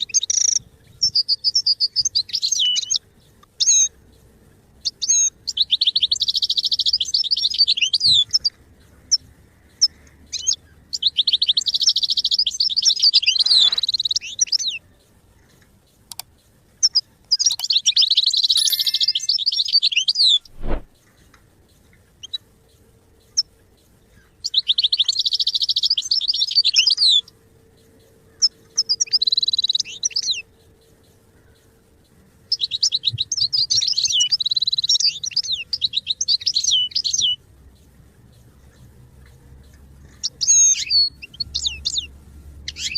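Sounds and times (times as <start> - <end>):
goldfinch twittering song: 16.8 - 20.8, 28.4 - 30.5, 32.5 - 37.4, 39.6 - 42.1.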